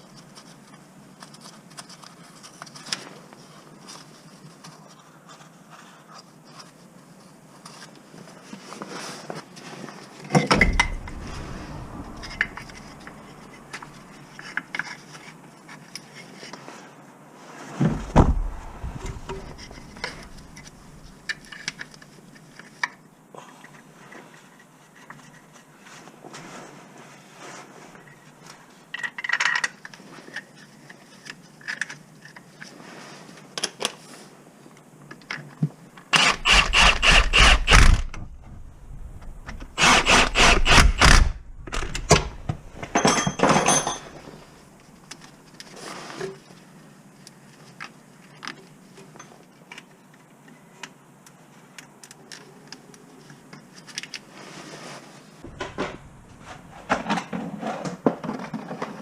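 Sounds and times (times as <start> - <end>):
cordless power tool running: 36.2 - 38.2, 39.6 - 41.4.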